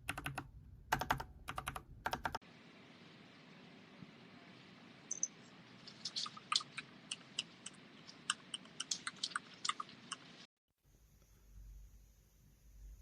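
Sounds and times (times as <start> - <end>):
mechanical keyboard typing: 0.0 - 2.4.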